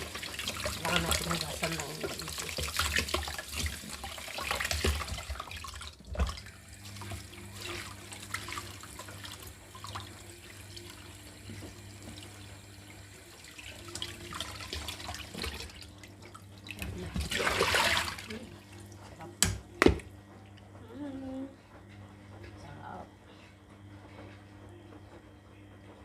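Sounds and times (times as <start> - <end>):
water splashing and trickling: 0.0 - 18.4.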